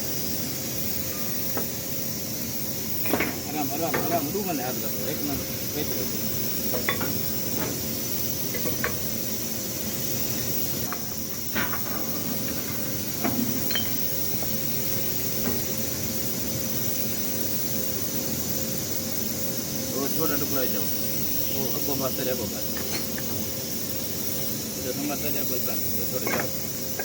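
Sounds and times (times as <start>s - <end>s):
steady machinery hum: 0.0s - 27.0s
tools clinking on metal: 13.6s - 14.0s.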